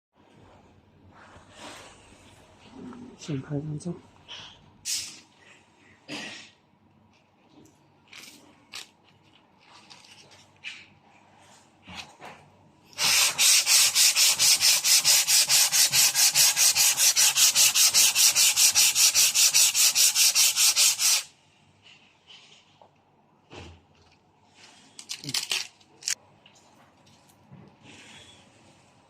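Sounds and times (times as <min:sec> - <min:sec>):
sanding block scratching: 0:13.0 - 0:21.3.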